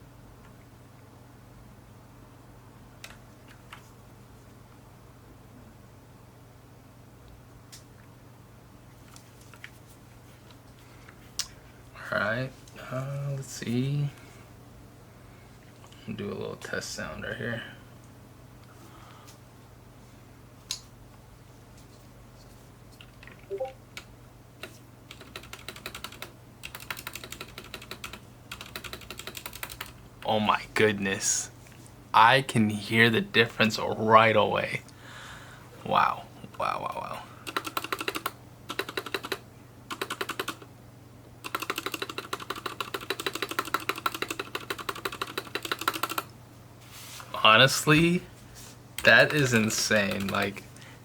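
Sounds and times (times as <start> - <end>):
mechanical keyboard typing: 25.1 - 30.0, 37.4 - 40.7, 41.4 - 46.3, 49.0 - 50.6.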